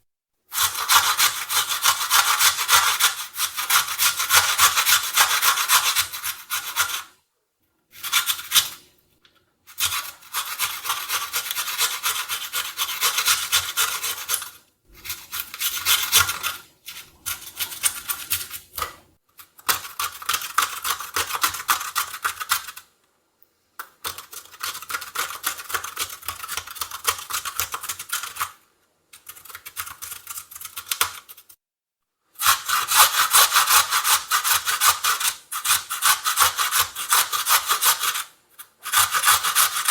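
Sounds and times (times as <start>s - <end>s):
carrot grated on metal grater: 9.7s - 22.8s, 32.4s - 39.9s.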